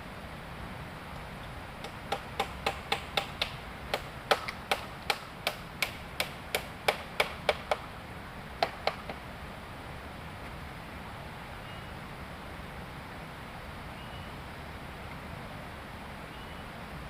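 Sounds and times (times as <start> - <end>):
tool chopping wood: 1.8 - 7.8, 8.6 - 9.2.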